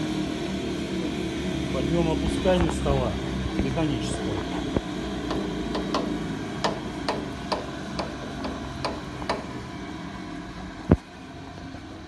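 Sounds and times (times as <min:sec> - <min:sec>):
machine hum: 0:00.0 - 0:12.0
planer table drive clicking: 0:04.7 - 0:09.5.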